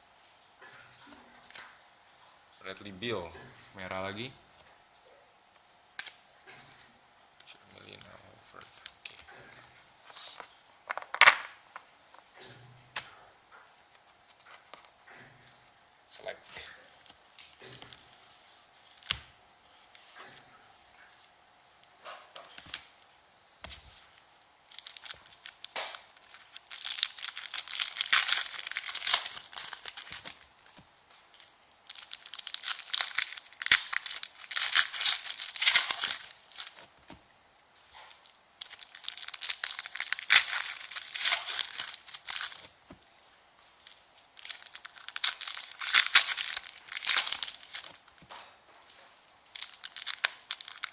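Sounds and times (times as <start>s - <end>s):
plastic wrapping tearing and crumpling: 16.5s - 19.3s, 23.9s - 37.2s, 37.8s - 50.9s.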